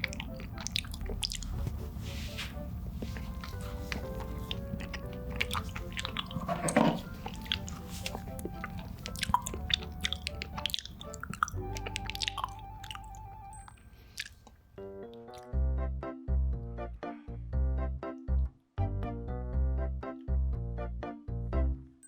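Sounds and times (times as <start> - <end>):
chewing food: 0.0 - 15.5
soft background music: 0.0 - 22.0.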